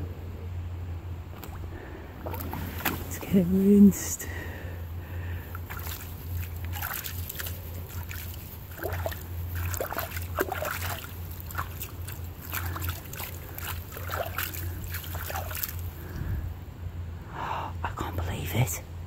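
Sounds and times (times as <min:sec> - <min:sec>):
water sloshing and splashing: 0:01.3 - 0:16.4.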